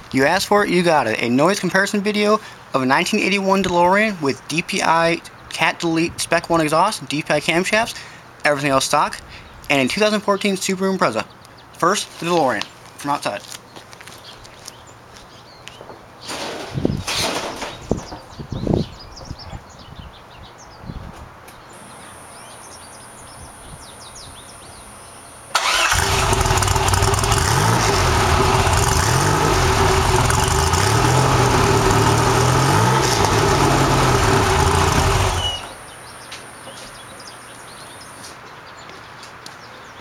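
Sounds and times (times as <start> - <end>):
car engine starting and revving: 25.5 - 35.8.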